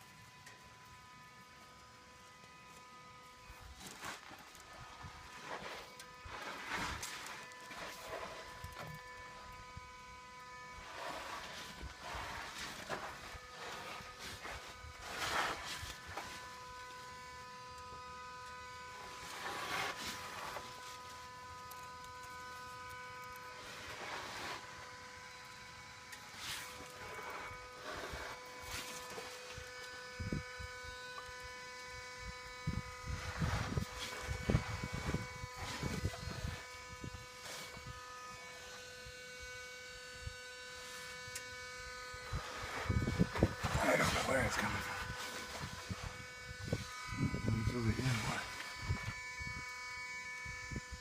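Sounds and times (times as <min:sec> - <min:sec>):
steady electric hum: 0:00.0 - 0:51.0
crunching rustle: 0:03.5 - 0:09.8.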